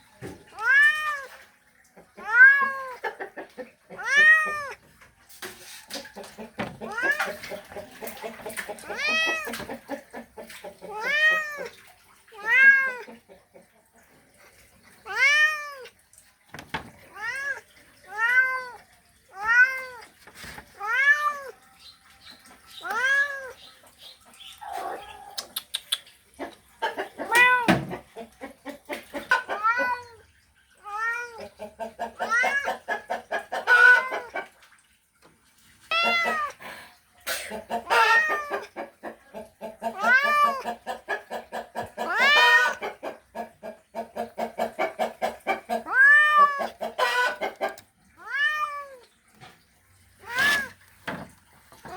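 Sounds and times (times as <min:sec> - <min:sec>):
cat yowling: 0:00.5 - 0:01.4, 0:02.2 - 0:03.0, 0:04.0 - 0:04.8, 0:06.8 - 0:07.4, 0:08.8 - 0:09.7, 0:10.9 - 0:13.1, 0:15.0 - 0:16.0, 0:17.0 - 0:20.1, 0:20.7 - 0:21.6, 0:22.8 - 0:23.6, 0:27.2 - 0:27.8, 0:29.5 - 0:30.2, 0:30.8 - 0:31.4, 0:32.2 - 0:32.9, 0:33.6 - 0:34.3, 0:35.9 - 0:36.6, 0:37.8 - 0:38.7, 0:39.9 - 0:40.7, 0:42.0 - 0:42.8, 0:45.7 - 0:47.4, 0:48.2 - 0:49.1, 0:50.2 - 0:50.8.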